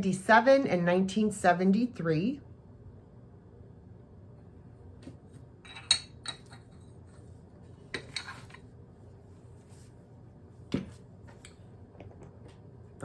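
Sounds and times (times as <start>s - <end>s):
porcelain plates clinking: 5.7s - 6.8s, 7.9s - 8.6s.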